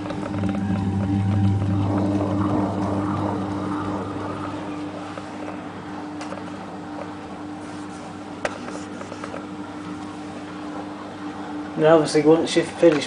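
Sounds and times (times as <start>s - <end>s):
washing machine hum: 0.0s - 8.4s.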